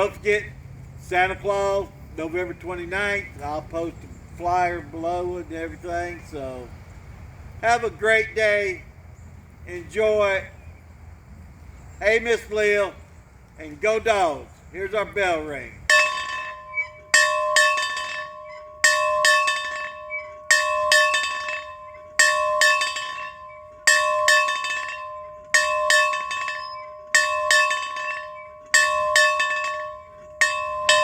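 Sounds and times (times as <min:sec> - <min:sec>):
bell ringing: 0:15.9 - 0:31.0.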